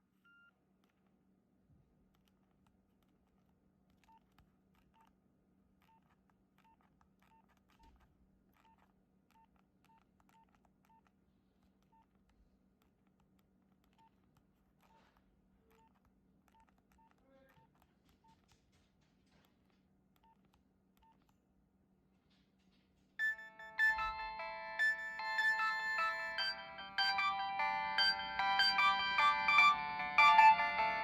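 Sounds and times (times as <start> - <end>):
faint keypad beeps: 23.2 - 31.0.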